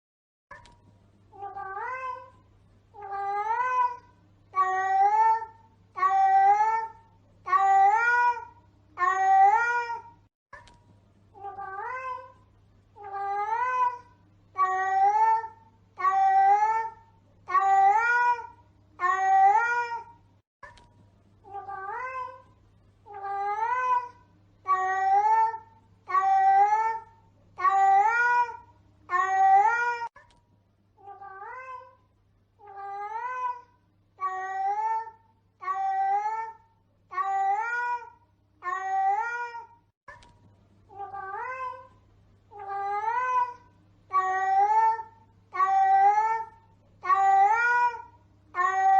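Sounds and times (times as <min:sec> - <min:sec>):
cat meowing: 0:01.4 - 0:02.3, 0:03.0 - 0:06.9, 0:11.4 - 0:12.4, 0:21.5 - 0:22.4, 0:31.0 - 0:32.0, 0:32.6 - 0:39.8, 0:40.9 - 0:41.9, 0:42.5 - 0:48.9.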